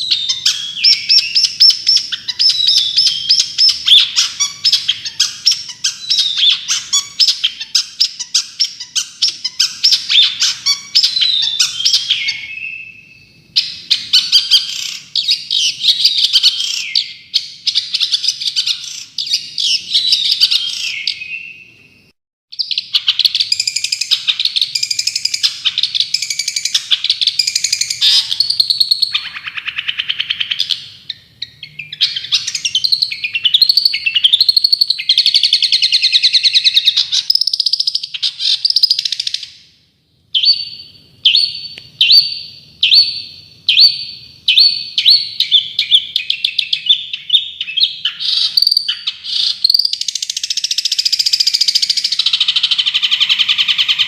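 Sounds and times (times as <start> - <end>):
songbird chirping and whistling: 0.0 - 54.0.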